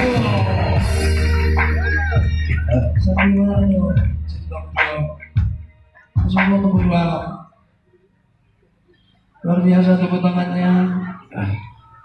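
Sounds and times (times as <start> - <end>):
band music: 0.0 - 7.2
drums: 0.0 - 7.3.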